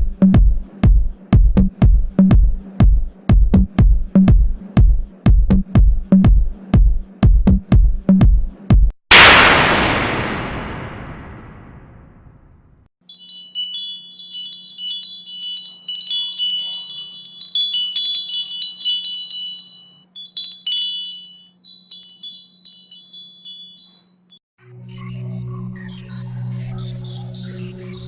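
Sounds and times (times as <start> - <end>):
chimes tinkling: 13.0 - 24.4.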